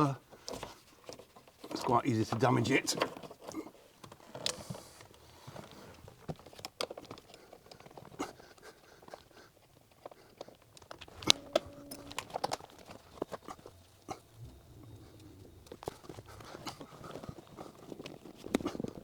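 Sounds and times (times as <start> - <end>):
short squeak: 11.0 - 16.8.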